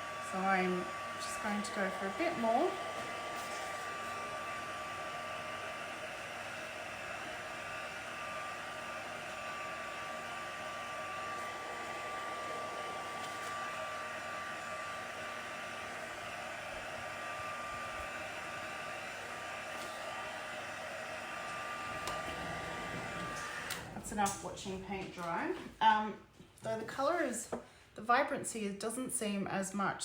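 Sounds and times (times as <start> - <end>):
heat gun blowing with whine: 0.0 - 24.7.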